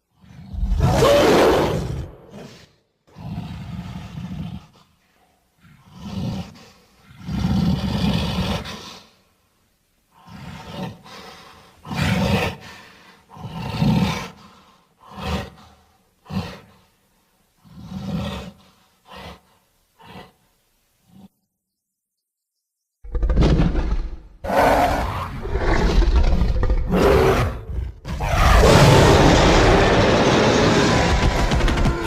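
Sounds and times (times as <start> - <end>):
deep caveman roar: 0.6 - 2.2, 24.4 - 32.0.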